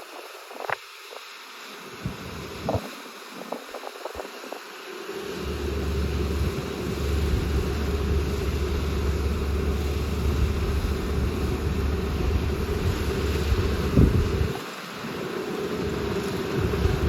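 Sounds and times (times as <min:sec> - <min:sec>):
combine harvester droning: 0:05.0 - 0:17.0.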